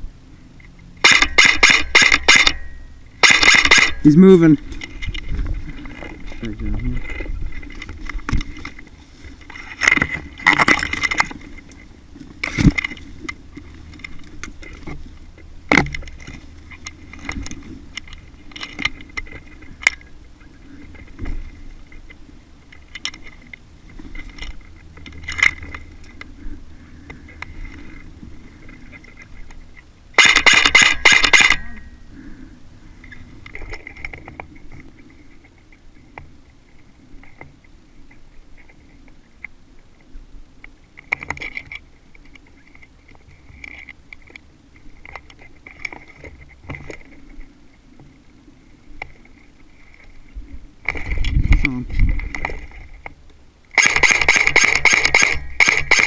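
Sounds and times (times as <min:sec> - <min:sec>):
airsoft gun rapid fire: 0:01.0 - 0:02.6, 0:03.2 - 0:04.0, 0:30.2 - 0:31.6, 0:53.8 - 0:56.0.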